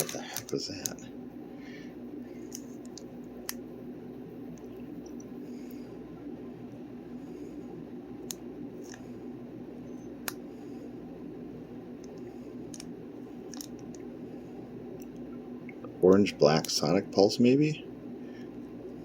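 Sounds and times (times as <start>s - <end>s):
cards clicking and scraping: 0.0s - 1.0s
low room hum: 0.0s - 19.0s.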